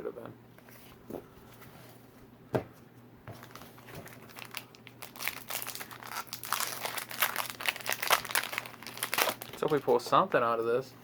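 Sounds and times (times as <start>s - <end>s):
foil wrapper crinkling and tearing: 3.4s - 10.0s.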